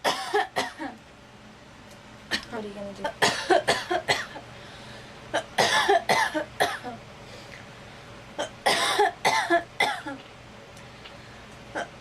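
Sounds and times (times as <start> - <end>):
girl coughing: 0.0 - 1.0, 2.3 - 4.4, 5.4 - 7.0, 8.4 - 10.2.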